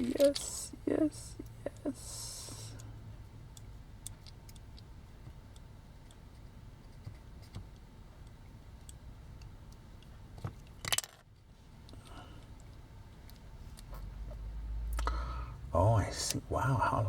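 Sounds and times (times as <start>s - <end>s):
toy parts clicking and tapping: 0.0s - 0.6s, 3.5s - 6.2s, 7.5s - 11.3s
toy parts clattering: 0.0s - 0.7s, 10.6s - 11.3s.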